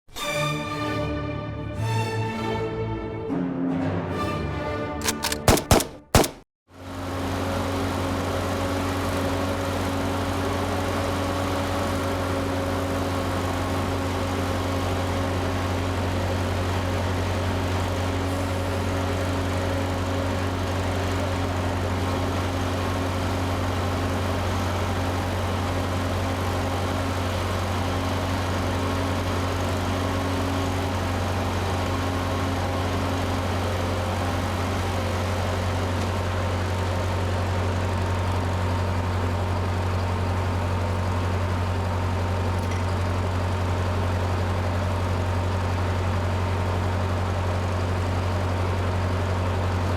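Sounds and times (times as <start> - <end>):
engine idling: 5.0 - 49.9.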